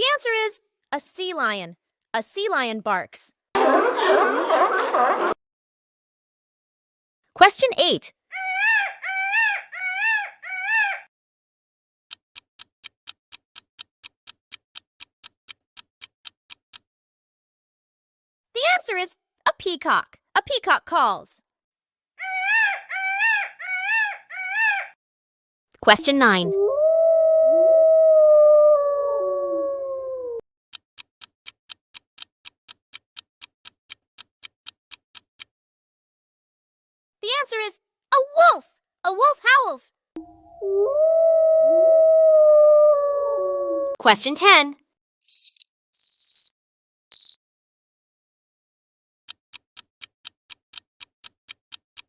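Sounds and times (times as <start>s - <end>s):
peacock calling: 8.3s - 11.1s, 22.2s - 25.0s
wolf howling: 8.4s - 11.1s, 22.2s - 25.0s, 25.9s - 30.4s, 40.2s - 44.0s
clock ticking: 12.1s - 16.8s, 30.7s - 35.5s, 49.3s - 52.0s.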